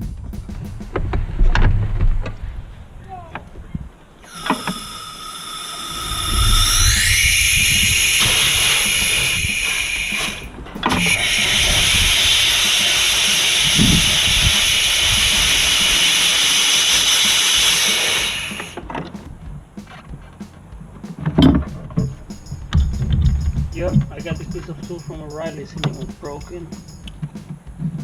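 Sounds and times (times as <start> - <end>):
compressed air hissing through line: 4.2 - 18.8, 22.0 - 27.0.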